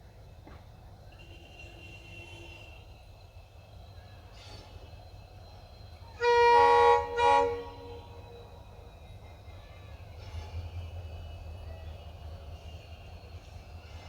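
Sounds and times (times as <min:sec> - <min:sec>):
locomotive horn blasts: 0:06.2 - 0:08.5.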